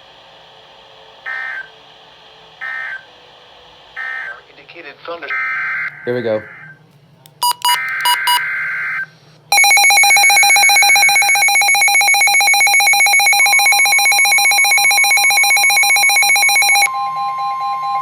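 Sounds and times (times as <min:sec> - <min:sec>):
pulsing electronic alert tone: 0:01.3 - 0:01.7, 0:02.6 - 0:03.1, 0:09.6 - 0:17.6
screechy digital data tones: 0:01.3 - 0:01.7, 0:02.6 - 0:03.1, 0:04.0 - 0:04.4, 0:09.6 - 0:16.9.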